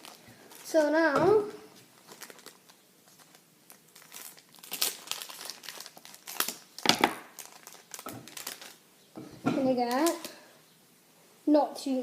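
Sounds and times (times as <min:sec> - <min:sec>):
plastic packaging crinkling: 0:00.0 - 0:08.8, 0:09.8 - 0:10.4.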